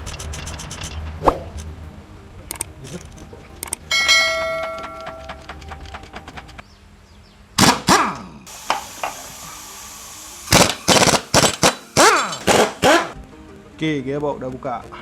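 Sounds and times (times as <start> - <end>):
metal tools knocking and clanking: 2.5 - 6.6.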